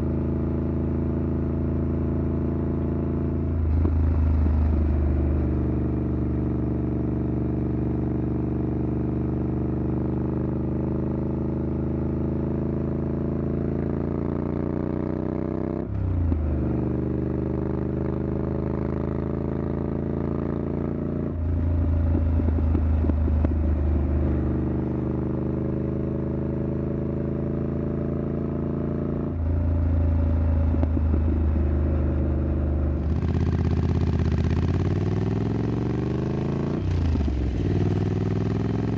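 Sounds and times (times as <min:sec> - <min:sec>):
motorcycle engine revving: 0:11.2 - 0:38.9.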